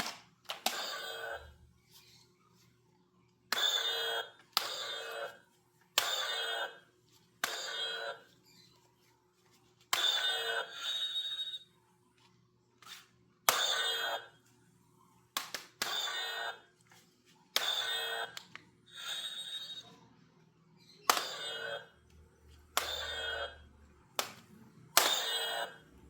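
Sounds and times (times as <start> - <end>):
toy sword electronic sound effects: 3.5 - 5.3, 6.0 - 6.8, 7.4 - 8.2, 10.0 - 11.6, 13.5 - 14.3, 15.8 - 16.6, 17.6 - 18.4, 19.0 - 19.8, 21.1 - 21.9, 22.8 - 23.6, 25.0 - 25.8.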